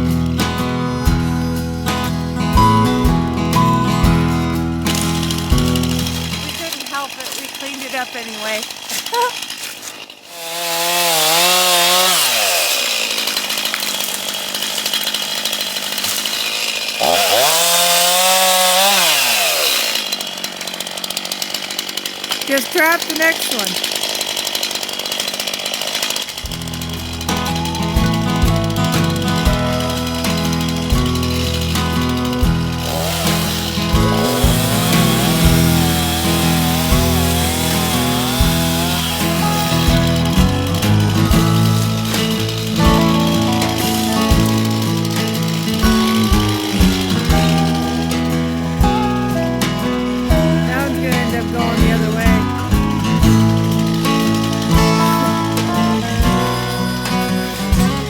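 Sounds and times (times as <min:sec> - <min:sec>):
music with a steady beat: 0:00.0 - 0:06.2, 0:26.6 - 0:37.7, 0:45.8 - 0:50.7
chainsaw cutting wood: 0:00.0 - 0:58.0.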